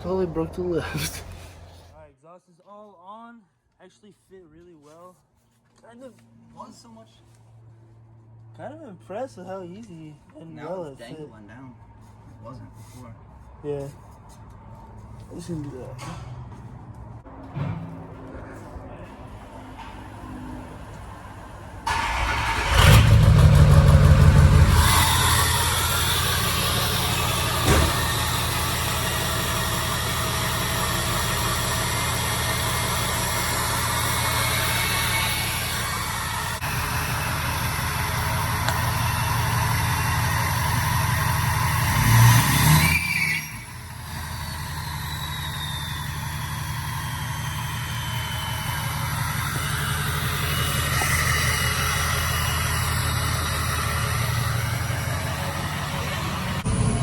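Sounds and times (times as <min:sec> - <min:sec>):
diesel engine idling: 0:00.0 - 0:02.0, 0:18.2 - 0:42.1, 0:43.7 - 0:57.0
engine revving: 0:19.6 - 0:57.0
turbo whistle: 0:42.5 - 0:48.6.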